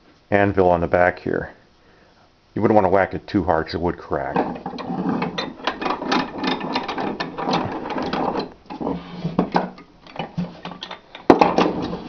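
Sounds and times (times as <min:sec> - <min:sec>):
bench vise clicking and rattling: 0:04.4 - 0:12.0.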